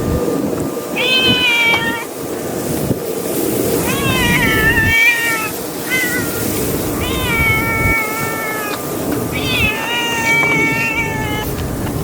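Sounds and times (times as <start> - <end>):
wind buffeting microphone: 0.0 - 12.0
kittens meowing: 1.0 - 2.1, 3.8 - 11.6.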